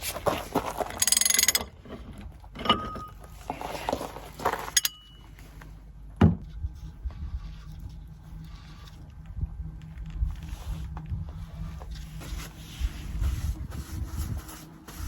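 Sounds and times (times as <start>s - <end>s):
metal clinks ringing: 4.7s - 5.3s.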